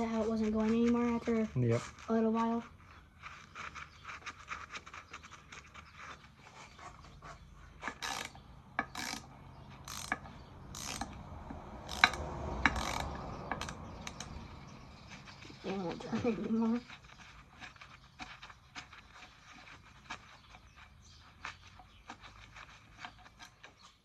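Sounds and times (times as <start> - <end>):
socket ratchet clicking: 8.0 - 11.2, 11.8 - 14.3.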